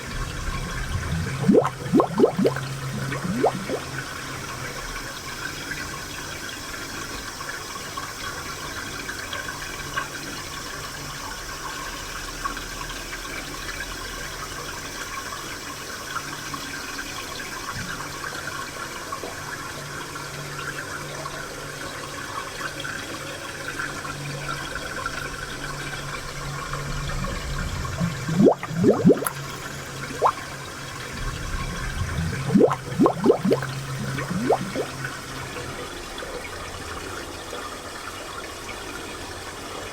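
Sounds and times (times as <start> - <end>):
water gurgling and splashing: 0.0 - 6.7, 25.2 - 37.4
water flowing and trickling: 0.0 - 39.9.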